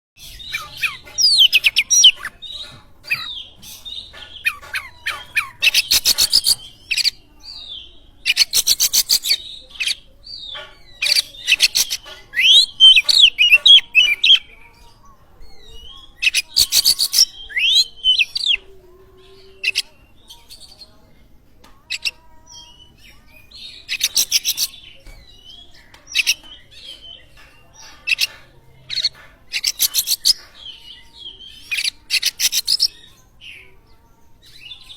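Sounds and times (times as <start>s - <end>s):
songbird singing loudly: 0.2s - 7.2s.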